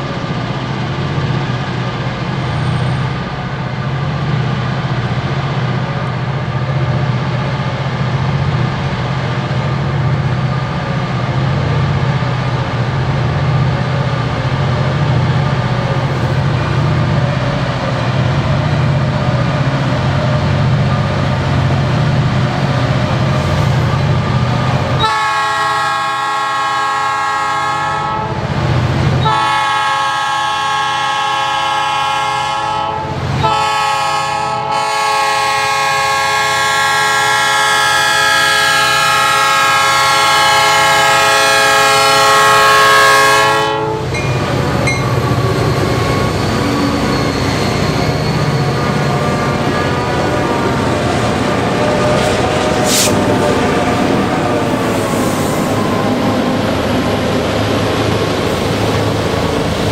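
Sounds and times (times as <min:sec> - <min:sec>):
diesel locomotive engine rumble: 0:00.0 - 0:59.9
locomotive air horn blasts: 0:25.0 - 0:28.4, 0:29.2 - 0:44.2.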